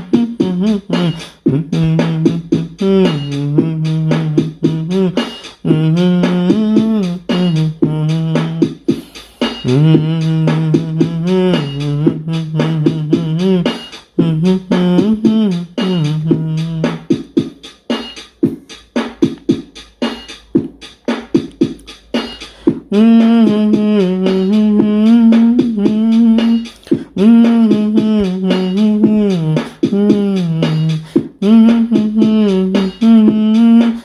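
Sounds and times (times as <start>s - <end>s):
fast percussive beat: 0.0s - 34.0s
held melodic line: 21.4s - 34.0s.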